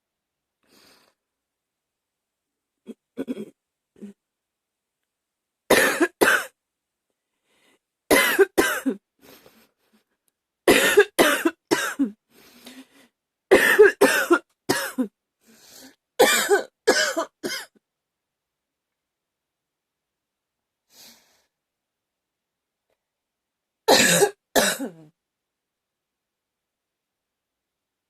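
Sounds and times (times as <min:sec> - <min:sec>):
faint breaths: 0:00.6 - 0:01.2, 0:07.1 - 0:07.9, 0:09.2 - 0:10.2, 0:12.3 - 0:13.2, 0:15.4 - 0:16.0
woman coughing hard: 0:03.2 - 0:03.6, 0:05.7 - 0:06.5, 0:08.1 - 0:09.0, 0:10.7 - 0:12.2, 0:13.5 - 0:15.1, 0:16.2 - 0:17.8, 0:23.9 - 0:25.1.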